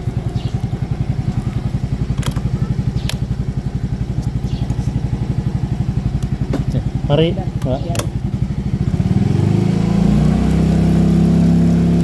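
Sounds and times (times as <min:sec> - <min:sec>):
motorcycle engine idling: 0:00.0 - 0:12.0
sharp clicks: 0:02.1 - 0:03.3.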